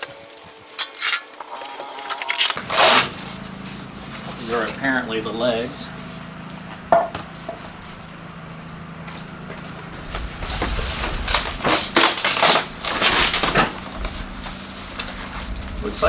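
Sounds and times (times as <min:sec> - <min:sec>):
cardboard and styrofoam crunching: 0:00.0 - 0:04.8, 0:09.9 - 0:16.0.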